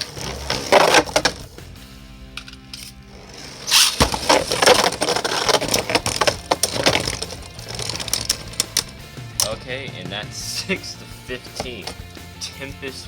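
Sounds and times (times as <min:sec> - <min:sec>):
background music: 0:00.0 - 0:13.0
spinning tops rattling and knocking: 0:02.3 - 0:09.6.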